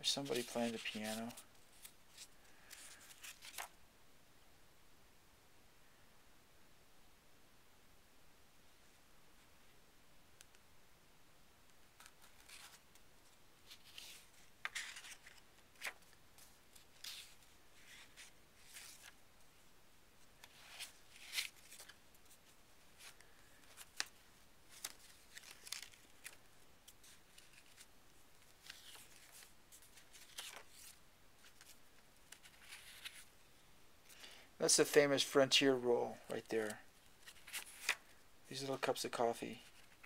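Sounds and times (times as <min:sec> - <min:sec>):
paper rustling: 0:00.0 - 0:03.8, 0:12.0 - 0:19.2, 0:20.3 - 0:33.3, 0:36.2 - 0:40.0.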